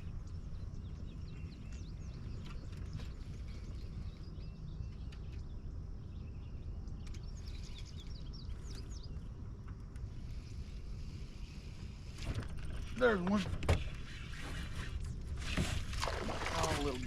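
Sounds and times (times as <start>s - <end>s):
small birds chirping: 0.0s - 14.9s.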